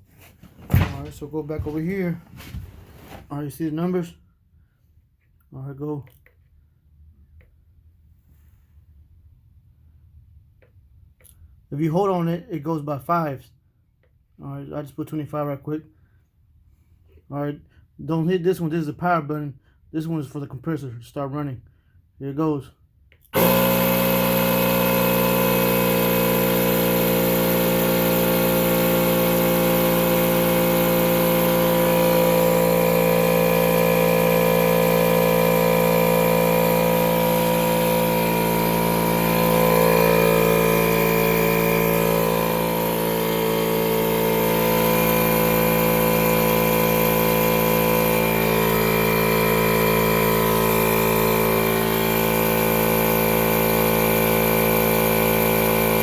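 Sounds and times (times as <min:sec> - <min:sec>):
portable air compressor running: 0:00.0 - 0:03.7, 0:23.3 - 0:56.0.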